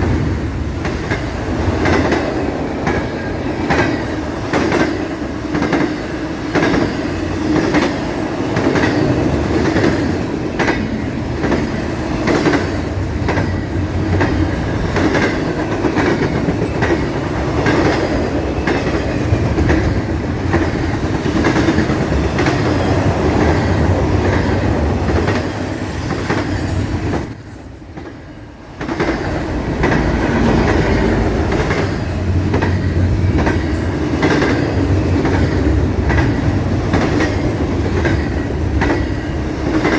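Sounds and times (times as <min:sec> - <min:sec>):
steady train rumble: 0:00.0 - 0:39.9
train wheels clicking over rail joints: 0:00.0 - 0:39.9.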